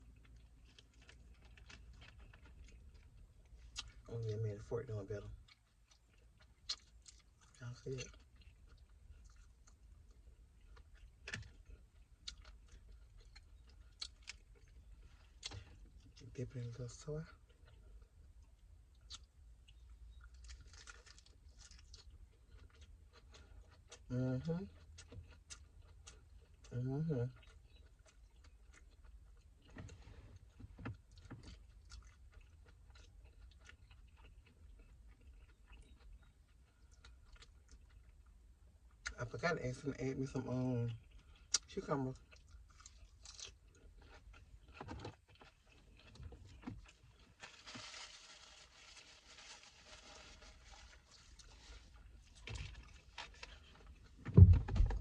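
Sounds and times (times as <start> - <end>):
person chewing wetly: 0.0 - 4.1, 5.3 - 16.2, 17.3 - 39.2, 40.9 - 54.2
faint eating sounds: 0.0 - 54.2.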